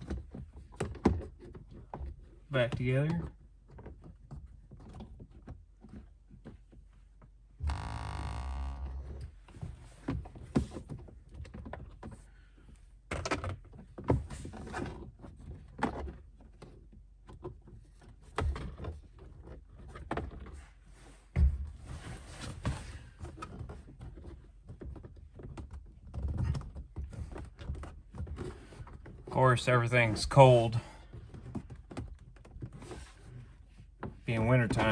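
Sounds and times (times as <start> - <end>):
short buzzing tone: 7.6 - 9.1.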